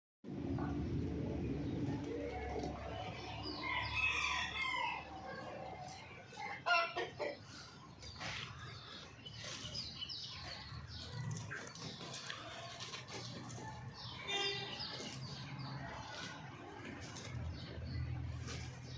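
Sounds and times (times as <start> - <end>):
chickens clucking: 0.4 - 18.9
rooster crowing: 3.5 - 5.4.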